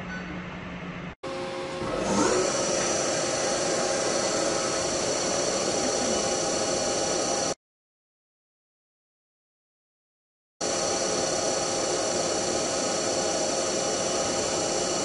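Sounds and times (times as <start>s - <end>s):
spindle whine: 1.0s - 7.6s
machine tool hum: 1.2s - 7.6s, 10.6s - 15.0s.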